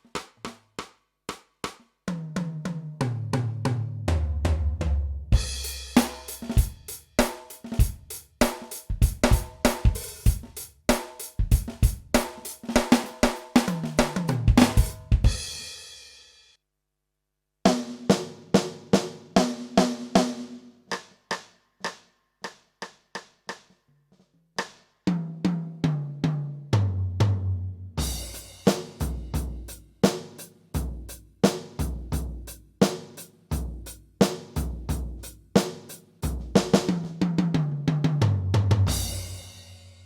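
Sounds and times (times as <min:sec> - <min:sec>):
electronic drum kit playing: 0:05.4 - 0:15.6.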